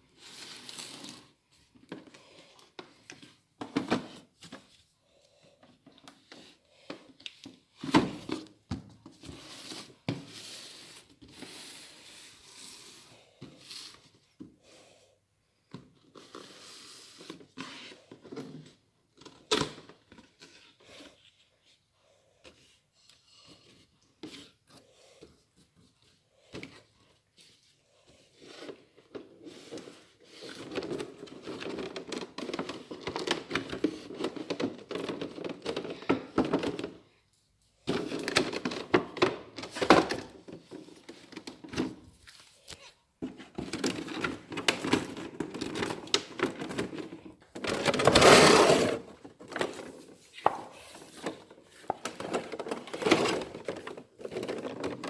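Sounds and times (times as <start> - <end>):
packaging rustling and crinkling: 37.9 - 55.0.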